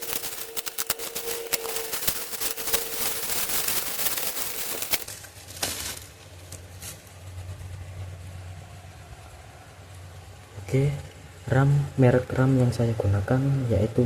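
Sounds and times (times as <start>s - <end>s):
steady low hum: 0.0s - 5.2s
plastic packaging crackling: 0.0s - 7.0s.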